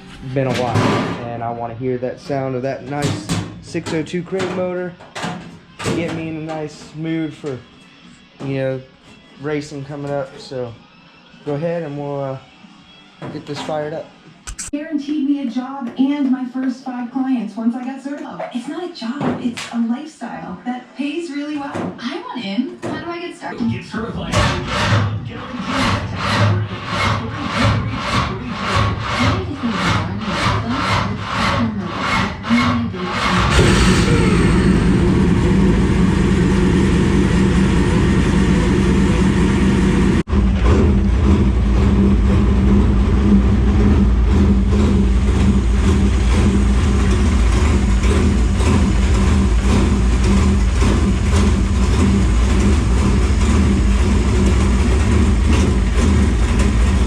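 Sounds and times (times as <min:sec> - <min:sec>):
starter motor cranking engine: 0:24.4 - 0:57.0
engine running steadily: 0:25.4 - 0:57.0.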